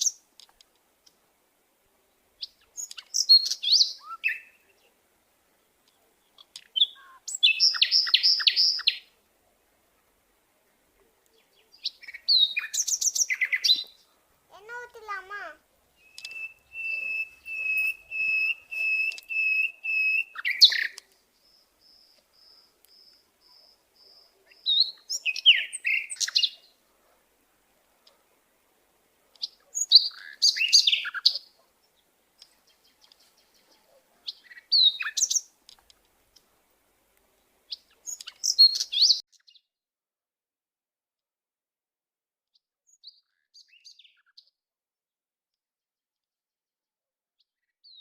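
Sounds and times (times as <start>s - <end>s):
birds chirping: 2.0s - 39.6s.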